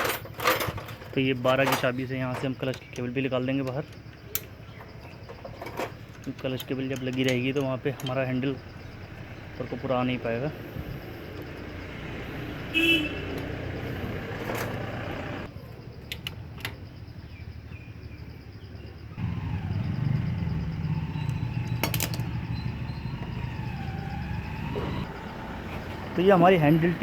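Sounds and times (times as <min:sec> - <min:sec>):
metal tools clinking: 0:00.0 - 0:08.6
vehicle engine rumble passing: 0:08.6 - 0:15.5, 0:19.2 - 0:27.0.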